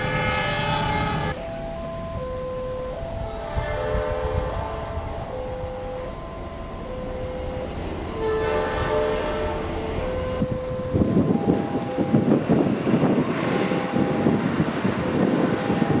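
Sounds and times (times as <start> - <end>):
train horn blast: 0.0 - 1.4, 3.2 - 5.7, 7.4 - 11.4
train rumbling on tracks: 0.0 - 16.0.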